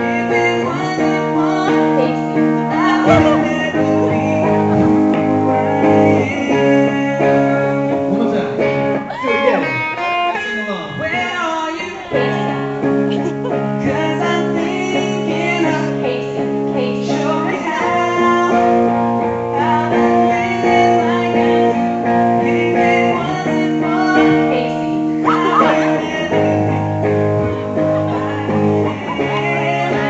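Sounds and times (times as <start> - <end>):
strummed guitar: 0.0 - 30.0
live band playing: 1.8 - 11.4, 12.0 - 17.9.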